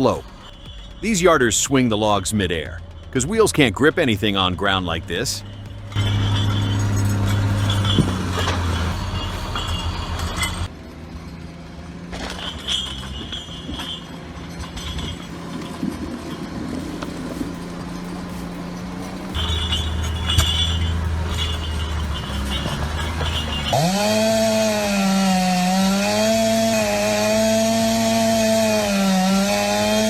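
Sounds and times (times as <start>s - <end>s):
heavy machinery running: 0.0s - 30.0s
metallic clinks: 5.0s - 10.7s, 12.1s - 29.7s.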